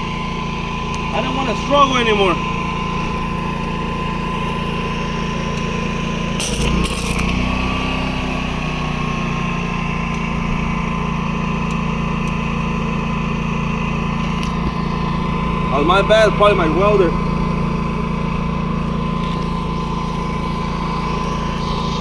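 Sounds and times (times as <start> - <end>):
generator running with whine: 0.0 - 22.0.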